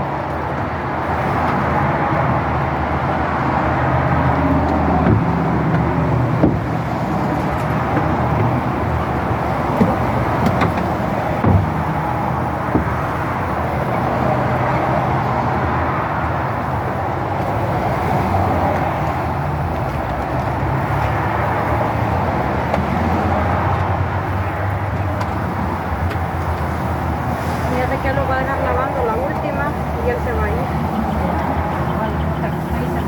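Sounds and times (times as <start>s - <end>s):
short knocks: 5.0s - 7.0s, 9.8s - 12.0s.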